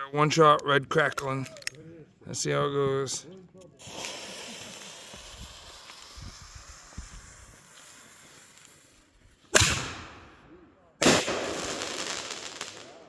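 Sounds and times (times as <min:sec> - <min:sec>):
firework fuse hissing: 0:03.7 - 0:10.4, 0:11.0 - 0:13.0
firework bang: 0:03.8 - 0:08.8, 0:09.5 - 0:13.0.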